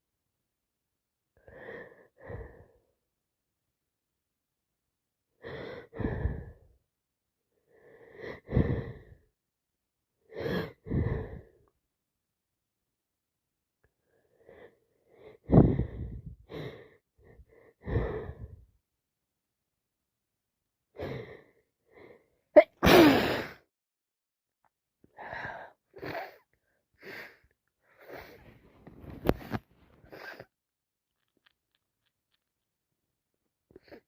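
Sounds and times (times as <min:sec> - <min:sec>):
woman sneezing: 0:22.6 - 0:23.6.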